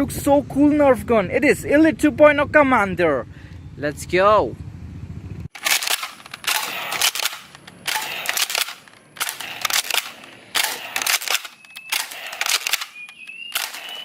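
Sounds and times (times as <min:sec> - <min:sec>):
toy gun shots: 0:05.6 - 0:14.0.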